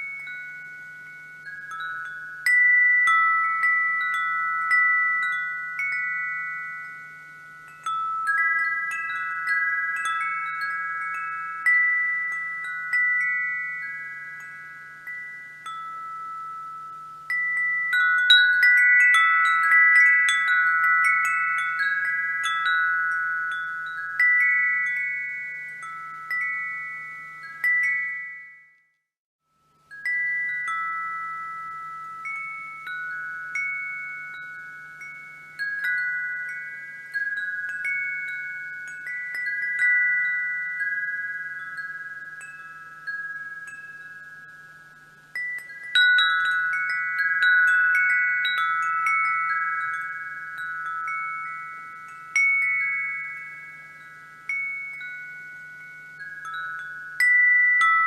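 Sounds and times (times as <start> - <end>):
wind chimes ringing: 0.0 - 58.0.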